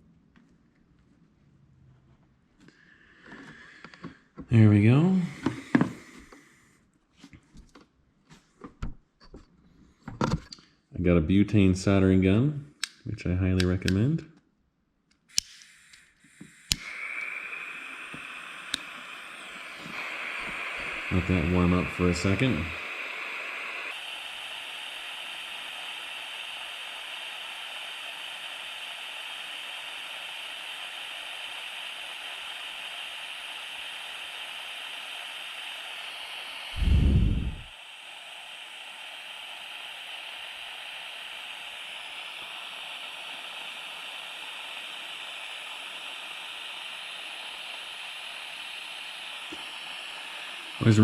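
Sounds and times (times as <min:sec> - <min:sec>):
soldering iron hissing: 0:02.7 - 0:06.8, 0:15.3 - 0:51.0.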